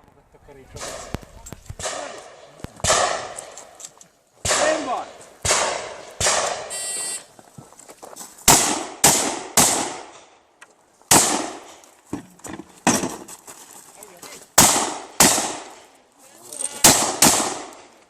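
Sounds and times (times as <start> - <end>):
shotgun shots with echo: 1.8 - 3.5, 4.4 - 6.7, 8.5 - 10.2, 11.1 - 11.7, 14.6 - 15.8, 16.8 - 17.9.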